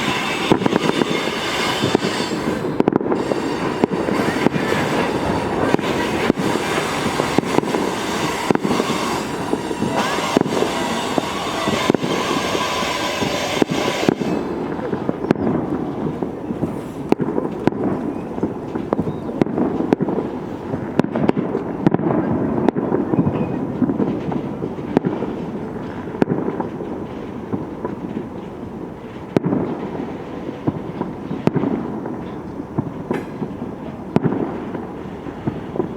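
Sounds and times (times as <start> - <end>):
train wheels squealing: 0.0 - 14.9
train rumbling on rails: 0.0 - 21.0
fireworks banging: 0.0 - 35.9.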